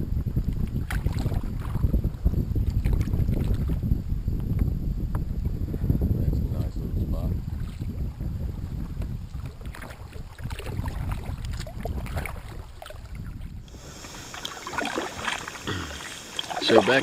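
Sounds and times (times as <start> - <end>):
wind rumbling on microphone: 0.0 - 17.0
paddle splashing water: 0.4 - 3.8, 7.4 - 17.0.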